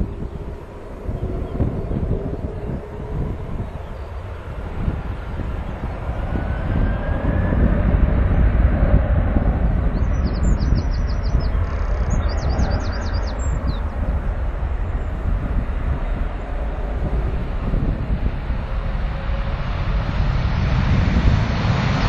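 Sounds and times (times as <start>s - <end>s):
jet engine rumbling: 0.0s - 22.0s
wind on microphone: 0.0s - 22.0s
bird chirping: 9.9s - 13.9s.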